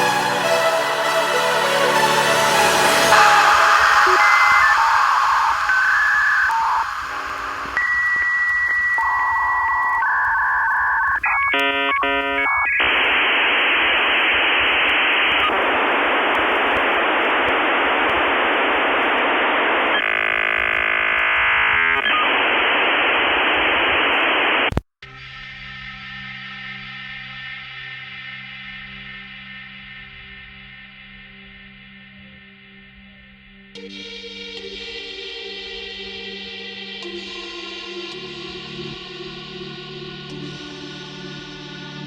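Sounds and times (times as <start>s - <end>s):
modem data hiss: 3.0s - 24.8s
dial tone: 3.2s - 12.8s
modem handshake tones: 3.4s - 13.1s
dialing beeps: 3.4s - 13.2s.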